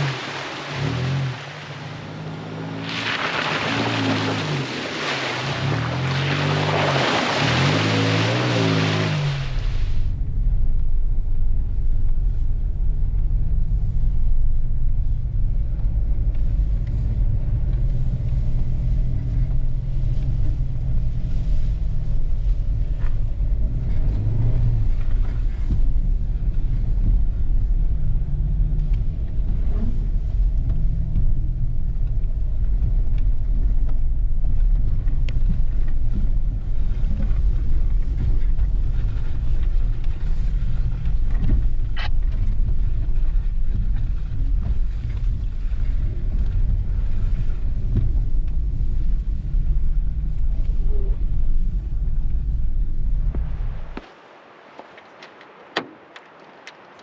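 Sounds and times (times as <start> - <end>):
vehicle engine rumble: 0.0 - 57.0.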